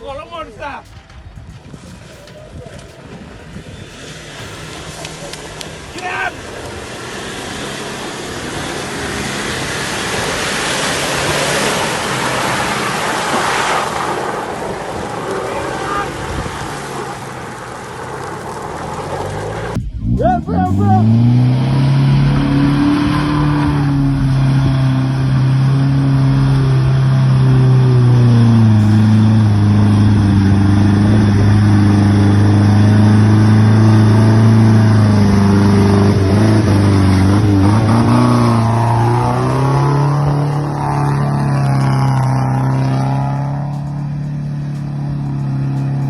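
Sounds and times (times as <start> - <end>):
off-road vehicle engine revving: 0.0 - 46.0.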